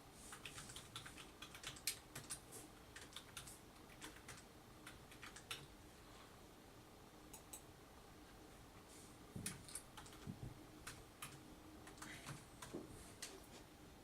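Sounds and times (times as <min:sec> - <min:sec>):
typing on computer keyboard: 0:00.3 - 0:05.7, 0:09.4 - 0:13.4.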